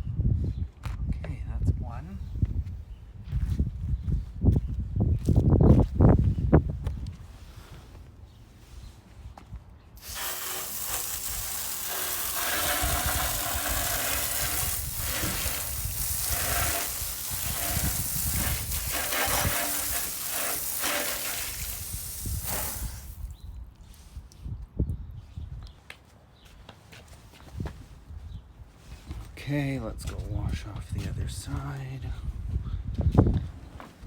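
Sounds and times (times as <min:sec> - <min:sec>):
garden hose spraying water: 0:10.0 - 0:23.4.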